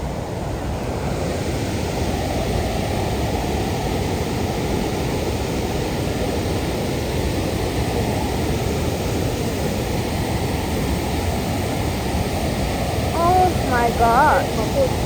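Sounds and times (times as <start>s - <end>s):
waterfall rushing: 12.5s - 15.0s.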